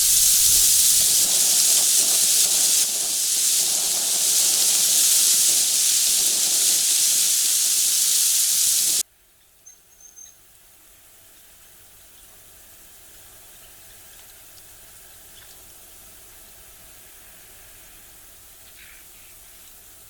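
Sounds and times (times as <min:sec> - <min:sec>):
loud high-pitched hiss: 0:00.0 - 0:09.0.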